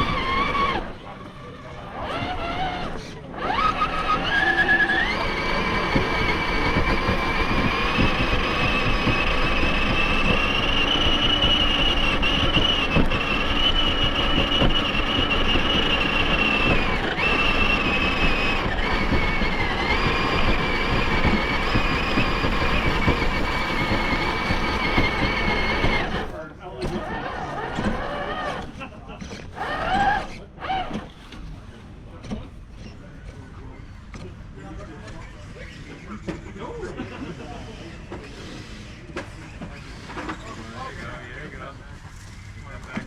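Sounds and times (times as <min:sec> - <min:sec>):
uneven rumble: 0:00.0 - 0:28.9
electric motor and gearbox whining: 0:00.0 - 0:31.5.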